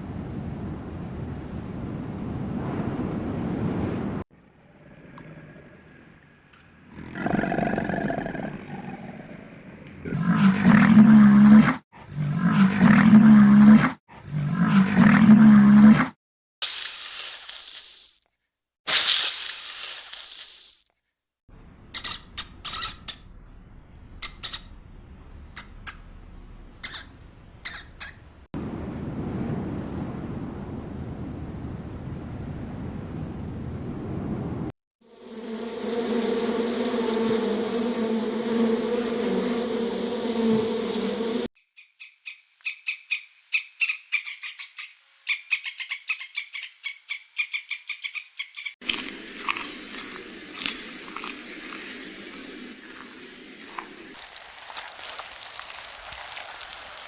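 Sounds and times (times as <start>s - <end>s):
high-pitched animal chirps: 21.9s - 23.3s, 24.2s - 24.8s, 25.6s - 26.1s, 26.8s - 28.3s
sharp chirping animal calls: 21.9s - 23.4s, 24.0s - 28.4s, 41.8s - 48.8s
buzzing drone: 35.1s - 41.5s.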